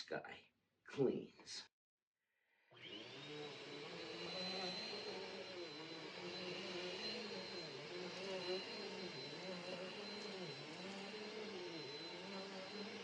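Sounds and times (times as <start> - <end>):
vacuum cleaner running: 2.7 - 13.0.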